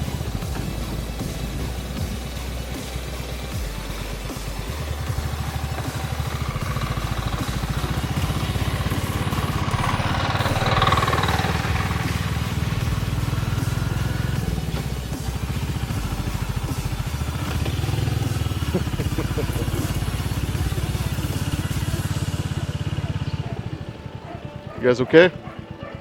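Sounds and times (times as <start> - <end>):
road noise: 0.0 - 26.0
small motorcycle engine running: 0.0 - 26.0.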